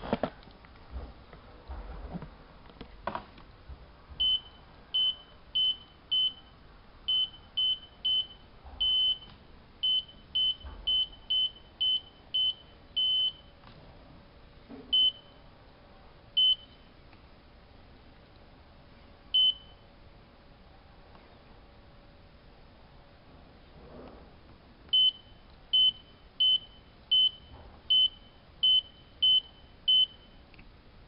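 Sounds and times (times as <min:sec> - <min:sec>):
washing machine panel beeping: 0:07.1 - 0:13.5, 0:14.9 - 0:15.3, 0:24.9 - 0:30.3.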